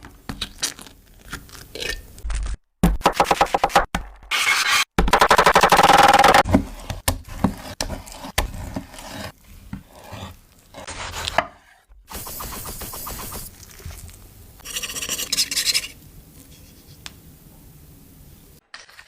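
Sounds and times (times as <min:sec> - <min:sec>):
rapid scraping in food preparation: 0:06.4 - 0:13.6, 0:14.6 - 0:17.0.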